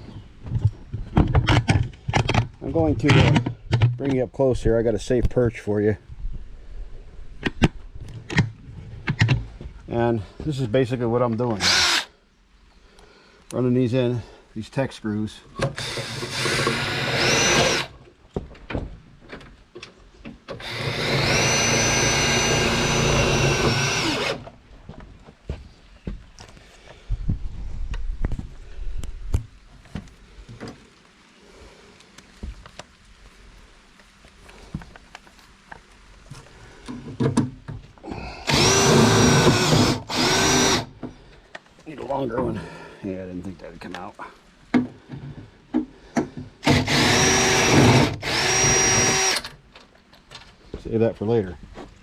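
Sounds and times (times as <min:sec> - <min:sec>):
power drill whining: 0:11.6 - 0:12.1, 0:15.6 - 0:17.9, 0:20.5 - 0:24.4, 0:38.4 - 0:40.9, 0:46.6 - 0:49.6.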